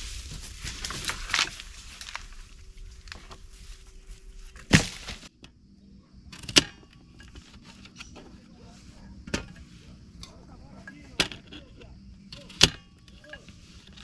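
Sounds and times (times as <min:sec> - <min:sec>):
clicks and rustles: 0:00.0 - 0:05.5.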